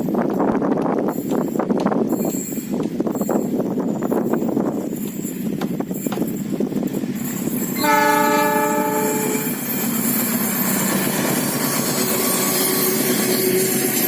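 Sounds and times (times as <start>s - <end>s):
train wheels on rail: 0.0s - 14.0s
locomotive horn: 7.8s - 9.6s.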